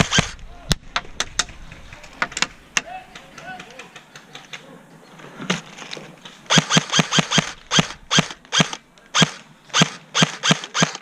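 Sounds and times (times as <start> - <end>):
airsoft rifle shots snapping: 6.5 - 11.0.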